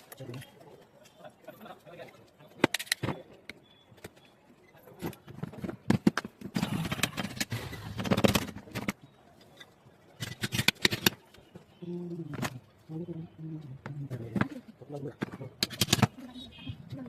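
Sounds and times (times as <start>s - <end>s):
metal clicks and scraping: 2.6s - 4.2s, 4.9s - 11.4s, 15.1s - 16.2s.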